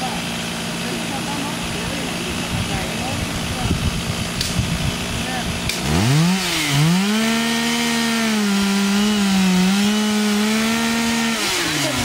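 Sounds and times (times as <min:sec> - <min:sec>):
chainsaw at high revs: 0:00.0 - 0:12.0.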